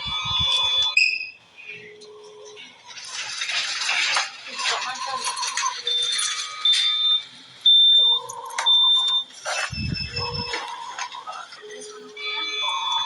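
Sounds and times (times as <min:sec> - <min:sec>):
monitor alarm beeps: 0:00.0 - 0:02.6, 0:05.3 - 0:13.0
low steady electronic tones: 0:00.0 - 0:02.9, 0:05.7 - 0:13.0.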